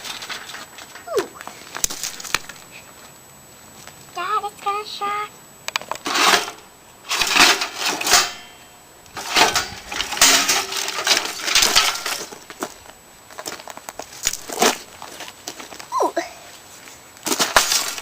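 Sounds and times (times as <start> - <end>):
metal computer parts clattering: 6.1 - 8.5, 9.2 - 12.4, 17.3 - 18.0.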